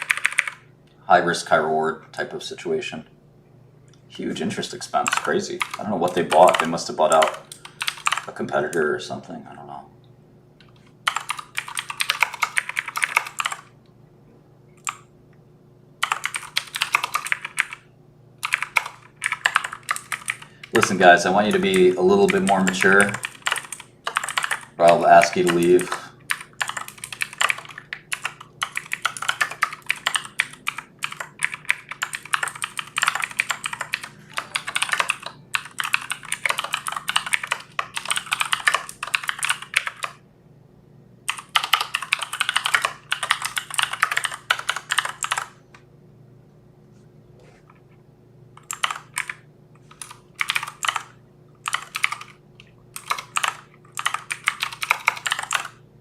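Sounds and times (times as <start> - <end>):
typing on a computer keyboard: 0.0 - 0.6, 5.0 - 8.3, 11.0 - 13.7, 16.0 - 17.8, 18.4 - 40.2, 41.3 - 45.6, 48.6 - 55.8.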